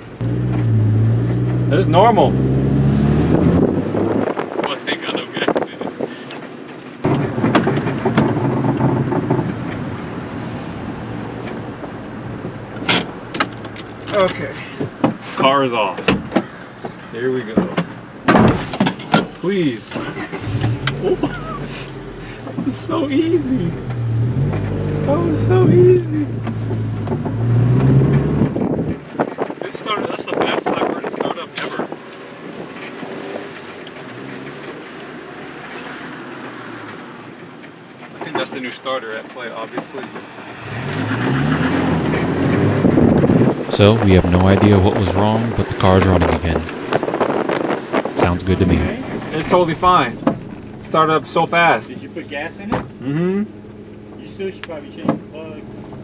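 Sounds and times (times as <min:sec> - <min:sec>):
car engine running: 0:18.0 - 0:27.4, 0:41.9 - 0:56.0.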